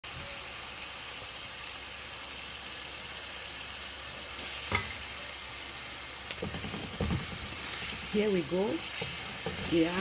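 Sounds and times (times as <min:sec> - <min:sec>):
food sizzling in a pot: 0:00.0 - 0:10.0.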